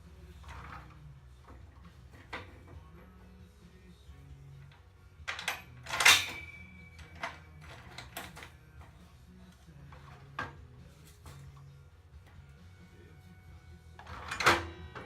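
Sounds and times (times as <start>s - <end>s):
metal tubing clanging: 5.3s - 8.5s.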